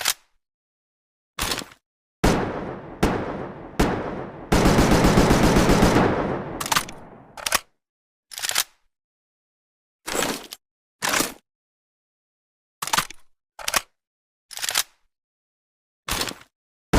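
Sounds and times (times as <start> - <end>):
imitated full-auto gunfire burst: 2.2 - 7.4
imitated rifle single shots: 2.2 - 7.6
short cracks: 2.2 - 7.7.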